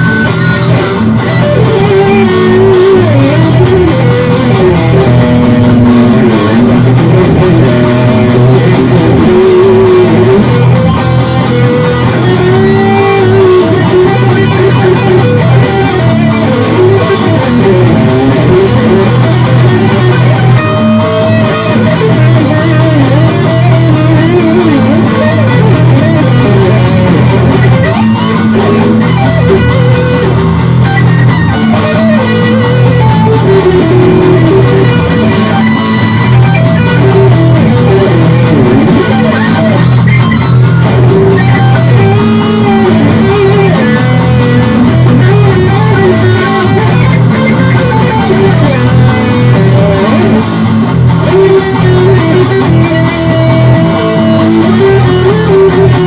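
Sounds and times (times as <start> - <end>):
hard rock electric guitar: 0.0 - 56.0.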